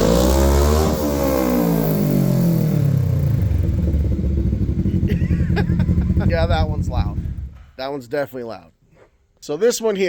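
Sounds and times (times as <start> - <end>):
loud raspy engine revving: 0.0 - 7.6.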